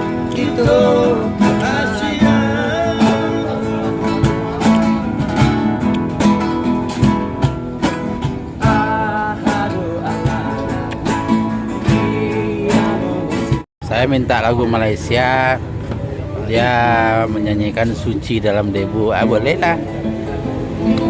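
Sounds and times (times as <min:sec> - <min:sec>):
man singing: 0:00.0 - 0:05.1, 0:08.6 - 0:13.6
acoustic guitar strumming: 0:00.0 - 0:13.7, 0:16.4 - 0:21.0.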